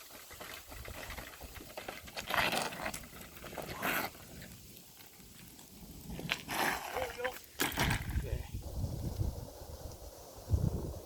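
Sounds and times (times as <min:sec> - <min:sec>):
handcycle tyres rolling: 0:00.0 - 0:08.5.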